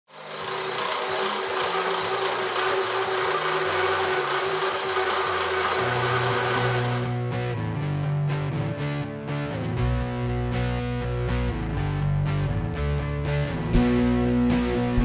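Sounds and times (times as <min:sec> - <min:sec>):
power tool whirring: 0:00.1 - 0:07.2
low background music: 0:07.2 - 0:15.0.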